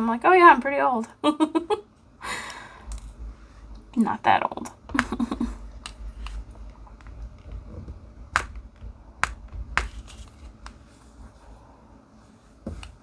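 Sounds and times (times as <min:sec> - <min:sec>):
low room hum: 0:00.0 - 0:13.0
pen tapping small clicks: 0:09.2 - 0:10.8.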